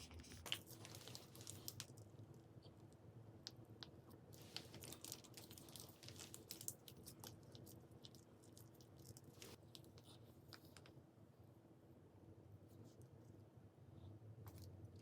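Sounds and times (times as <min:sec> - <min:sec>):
crinkling: 0:00.0 - 0:02.1, 0:04.4 - 0:11.0
faint low hum: 0:00.0 - 0:15.0.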